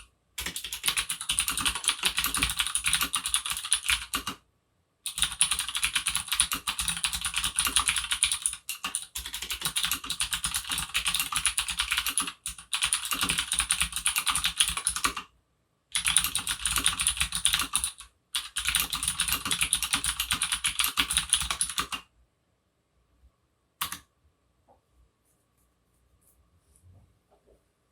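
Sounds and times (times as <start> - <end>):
clicky mechanical keyboard typing: 0.0 - 4.4, 5.1 - 15.2, 15.9 - 22.0, 23.8 - 24.1.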